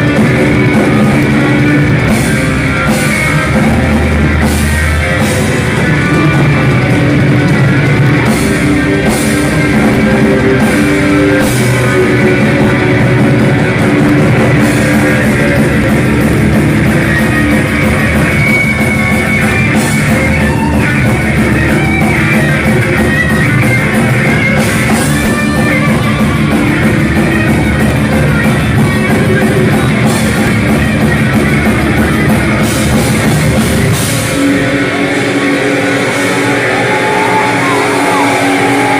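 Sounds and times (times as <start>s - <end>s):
distorted electric guitars: 0.0s - 38.9s
drum kit with crashing cymbals: 0.0s - 38.9s.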